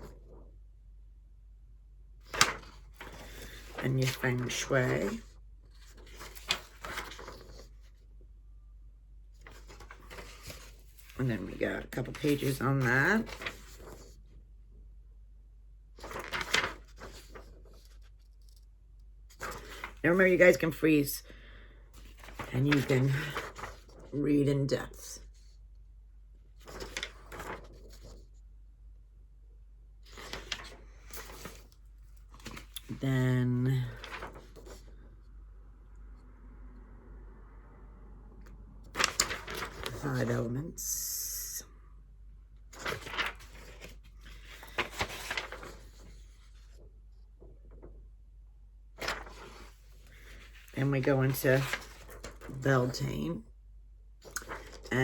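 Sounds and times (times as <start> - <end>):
paper pages rustling: 2.2 - 8.1, 9.3 - 14.3, 16.0 - 18.7, 19.3 - 20.4, 22.0 - 24.2, 26.6 - 28.4, 30.0 - 35.2, 38.9 - 41.2, 42.7 - 48.2, 48.9 - 53.3, 54.2 - 55.0.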